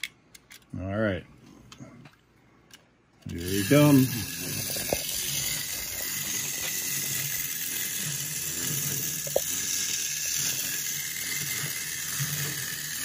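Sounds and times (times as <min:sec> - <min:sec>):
wind-up toy whirring: 0:03.2 - 0:13.0.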